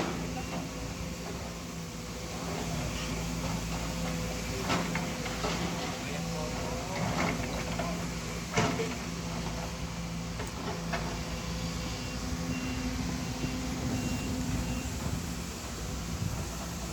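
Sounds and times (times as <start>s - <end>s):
excavator diesel engine running: 0.0s - 16.9s
short high beeps: 12.0s - 14.9s.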